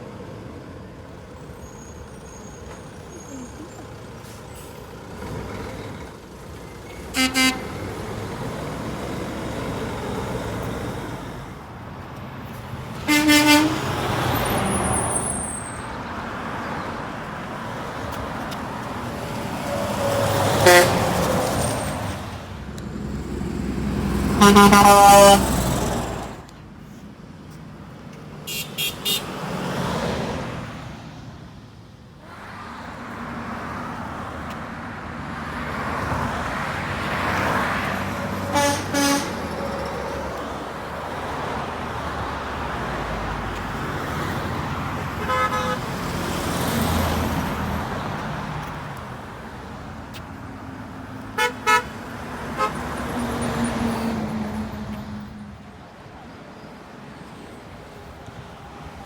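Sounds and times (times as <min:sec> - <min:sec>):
road traffic noise: 0:00.0 - 0:59.0
truck horn toots: 0:07.1 - 0:08.0, 0:13.0 - 0:14.2, 0:20.5 - 0:21.4, 0:24.3 - 0:25.7, 0:28.5 - 0:29.4, 0:38.4 - 0:39.6, 0:45.2 - 0:46.0, 0:51.4 - 0:52.9.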